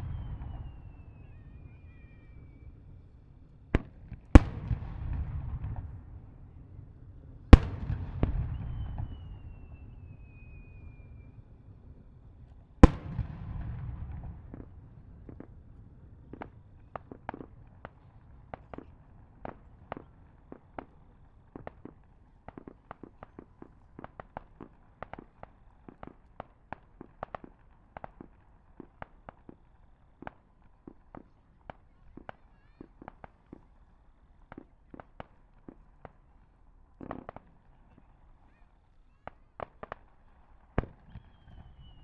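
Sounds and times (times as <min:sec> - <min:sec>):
heavy fireworks bangs: 0:03.7 - 0:11.1, 0:12.8 - 0:24.6
high falling whistle: 0:08.5 - 0:11.4
fireworks cracking and popping: 0:12.4 - 0:42.0.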